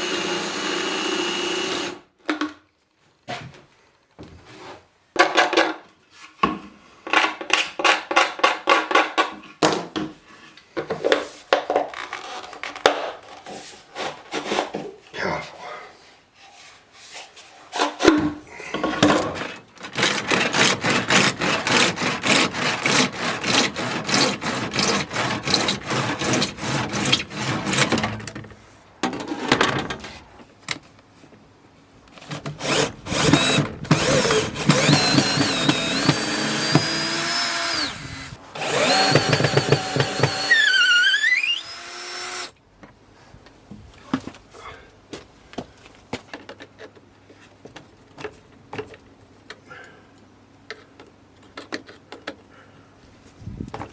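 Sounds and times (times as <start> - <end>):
power drill running: 0.0 - 2.0, 32.6 - 42.6.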